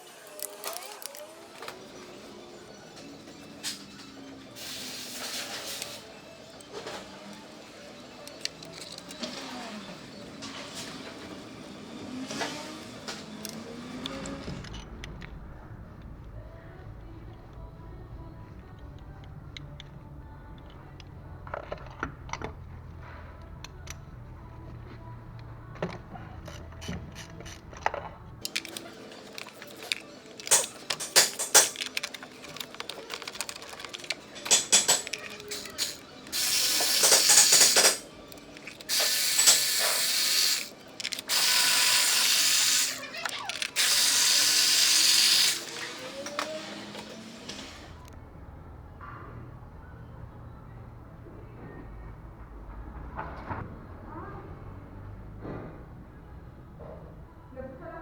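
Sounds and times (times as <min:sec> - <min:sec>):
ratchet clicking and rattling: 0:26.4 - 0:45.8.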